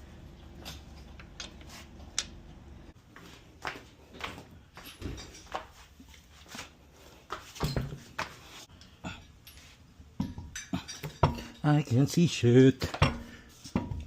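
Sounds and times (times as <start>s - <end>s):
metal tools clicking and clinking: 8.7s - 12.0s.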